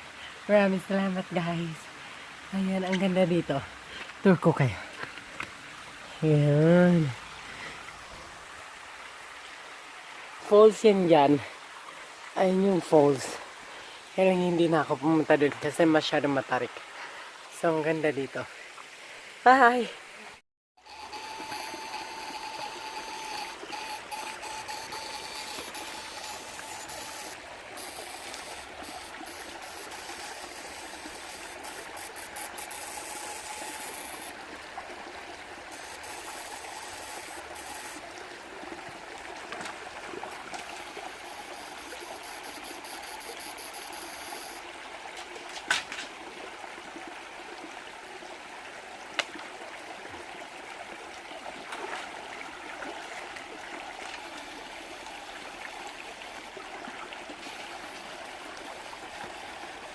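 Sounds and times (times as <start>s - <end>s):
stream water running: 0.0s - 59.9s
high buzz: 20.8s - 34.4s, 35.7s - 38.0s, 40.3s - 44.6s.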